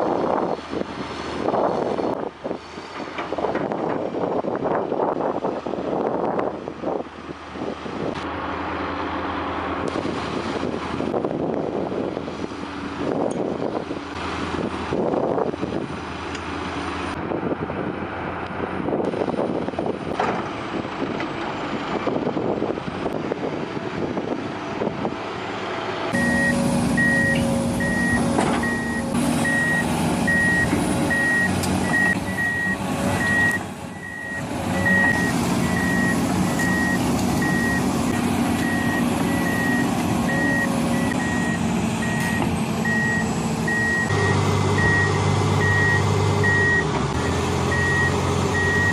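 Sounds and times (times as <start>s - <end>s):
diesel engine running: 0.0s - 48.9s
reversing alarm beeping: 26.2s - 37.8s, 38.6s - 44.2s, 44.8s - 48.9s.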